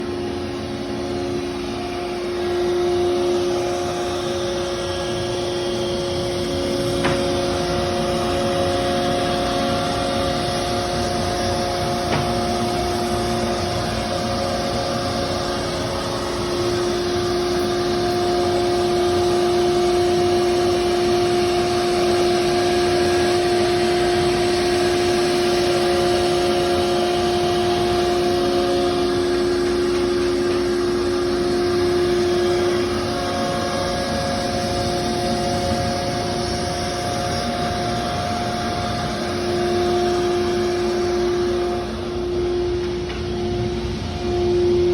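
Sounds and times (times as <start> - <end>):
router whine: 0.0 - 44.9.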